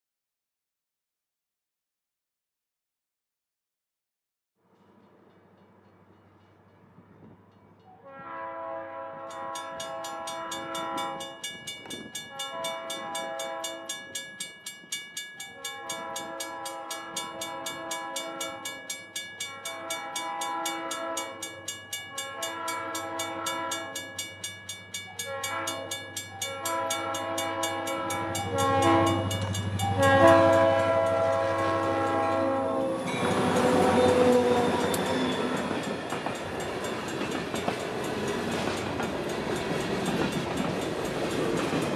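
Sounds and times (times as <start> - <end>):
train wheel and rail noise: 4.8 - 8.4, 9.0 - 41.9
locomotive horn blasts: 8.0 - 11.5, 12.2 - 14.0, 15.5 - 24.2, 25.1 - 35.9
crossing bell ringing rapidly: 9.3 - 41.9.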